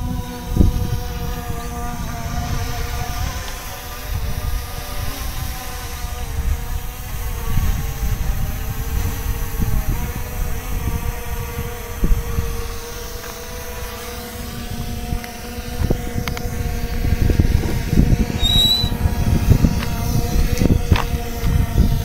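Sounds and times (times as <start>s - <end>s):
drone propellers humming: 0.0s - 22.0s
wind buffeting microphone: 0.0s - 22.0s
short high beep: 18.4s - 18.9s.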